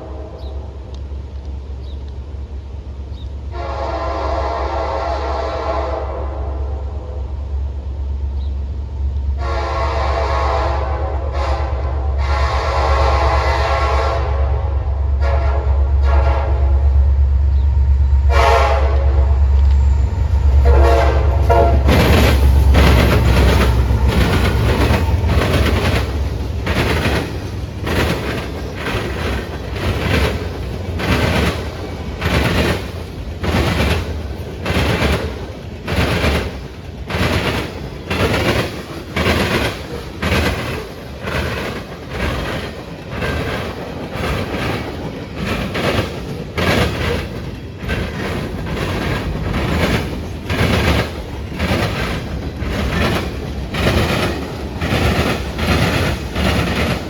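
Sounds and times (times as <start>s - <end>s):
train horn blasts: 0.0s - 1.0s, 3.5s - 7.5s, 9.3s - 17.0s, 18.2s - 25.6s
train wheels clacking over joints: 20.4s - 57.0s.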